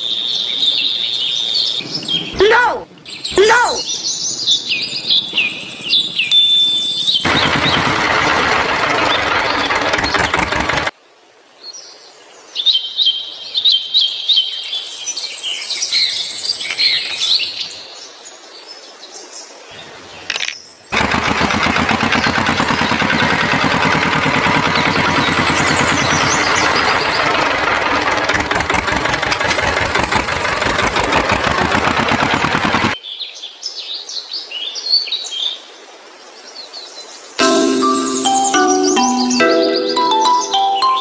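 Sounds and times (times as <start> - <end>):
birds chirping: 0.0 - 10.9, 15.8 - 17.9, 19.7 - 33.0, 37.4 - 41.0
loud motor running: 7.2 - 10.9, 20.9 - 33.0.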